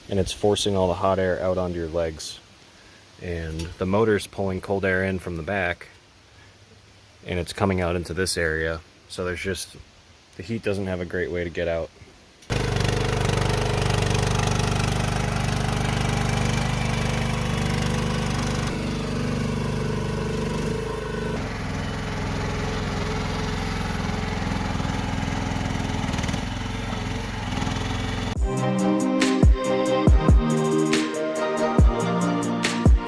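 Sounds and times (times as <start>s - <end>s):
skid steer engine running: 12.5s - 28.6s.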